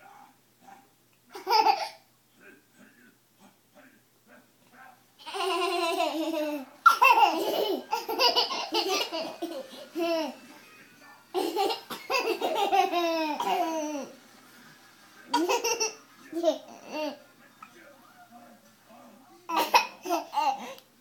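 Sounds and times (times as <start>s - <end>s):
baby giggling: 1.3s - 2.0s, 5.2s - 10.4s, 11.4s - 14.2s, 15.3s - 17.2s, 19.5s - 20.8s.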